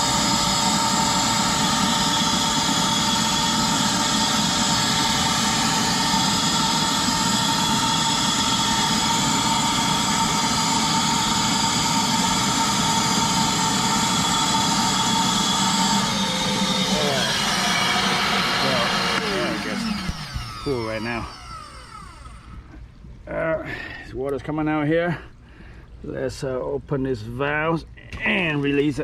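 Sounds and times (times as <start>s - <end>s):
vacuum sucking water: 0.0s - 22.6s
vacuum motor whine: 0.0s - 22.8s.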